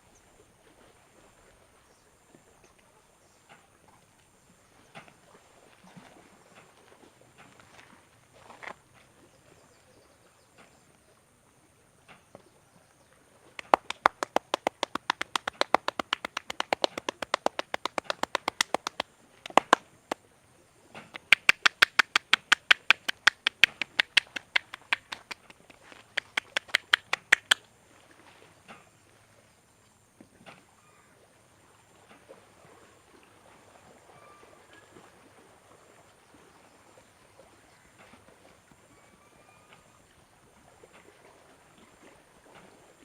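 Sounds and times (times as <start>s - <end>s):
hands tapping and slapping head: 13.6s - 19.8s, 21.2s - 27.6s.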